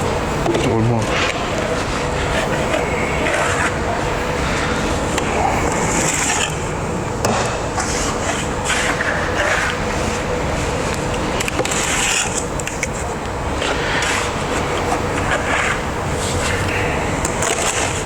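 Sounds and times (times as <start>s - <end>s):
steel rod scraping wet concrete: 1.1s - 3.9s, 7.8s - 9.7s, 11.5s - 12.5s.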